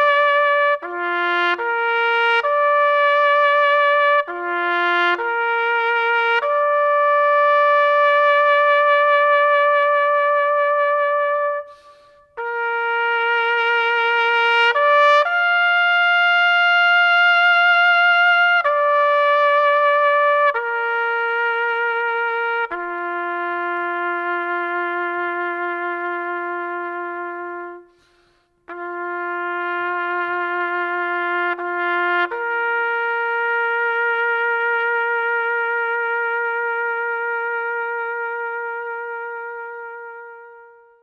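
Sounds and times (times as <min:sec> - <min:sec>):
solo trumpet slow tune: 0:00.0 - 0:41.0.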